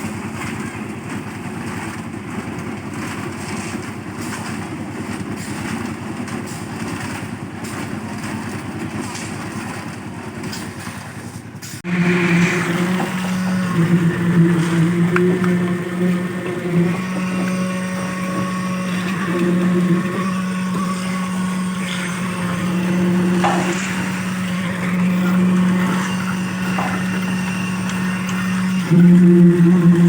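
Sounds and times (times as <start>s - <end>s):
machine motor humming: 11.8s - 30.0s.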